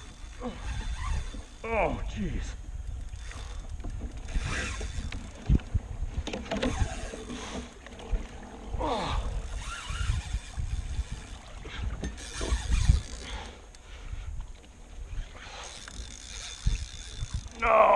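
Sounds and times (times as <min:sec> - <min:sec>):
water splashing against kayak hull: 0:00.0 - 0:13.7
short falling groan: 0:08.7 - 0:09.8.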